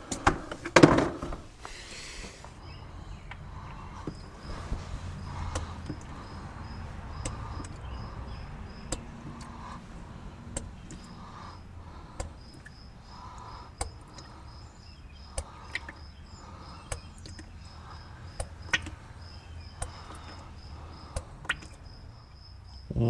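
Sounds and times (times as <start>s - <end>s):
cricket chirping: 1.9s - 23.0s
sharp ticks and clicks: 5.5s - 9.6s.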